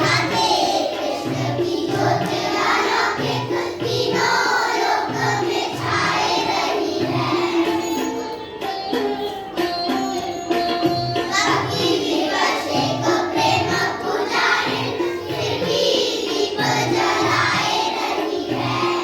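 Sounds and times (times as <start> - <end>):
children singing: 0.0 - 8.4, 11.2 - 19.0
instrumental music with drum beat: 0.0 - 19.0.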